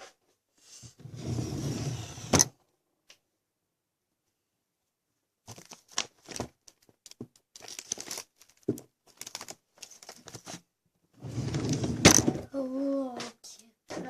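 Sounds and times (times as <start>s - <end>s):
paper pages rustling and turning: 5.5s - 10.7s.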